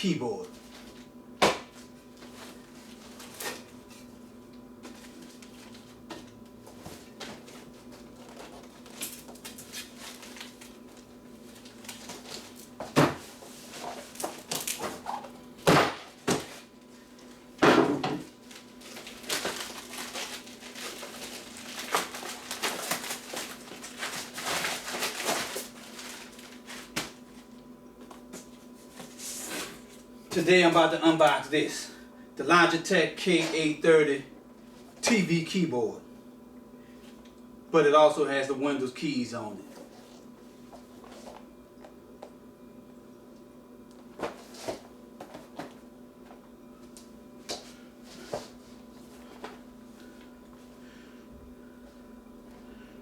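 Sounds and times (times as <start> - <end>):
faint steady hum: 0.0 - 53.0.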